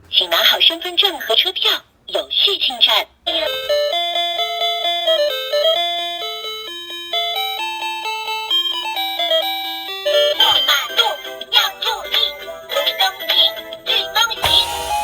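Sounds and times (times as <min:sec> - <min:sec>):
electronic chime melody: 0:14.4 - 0:15.0.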